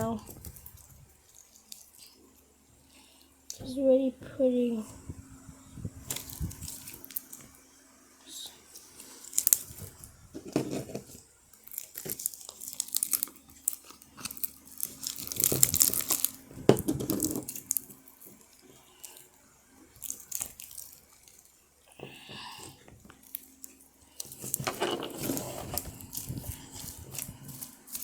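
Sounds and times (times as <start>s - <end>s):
slime crackling and tearing: 0.0s - 2.2s, 6.1s - 7.4s, 8.8s - 10.0s, 11.5s - 16.5s, 17.1s - 21.6s, 23.1s - 28.0s.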